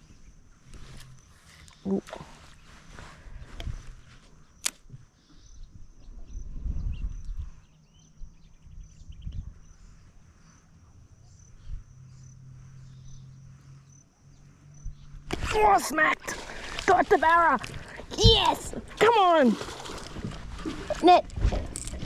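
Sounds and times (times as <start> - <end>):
insect chirping: 0.0 - 22.0
low rumbles: 11.0 - 22.0.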